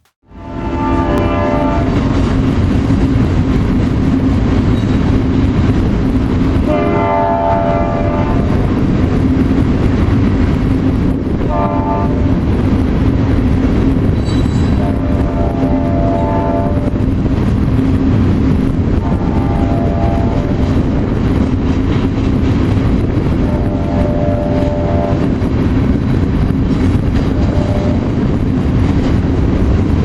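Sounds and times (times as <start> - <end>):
freight train rumbling past: 0.0 - 30.0
train horn: 0.2 - 2.3, 6.6 - 8.7, 11.5 - 12.5, 14.3 - 17.2, 18.9 - 21.2, 23.2 - 25.5, 27.2 - 28.3.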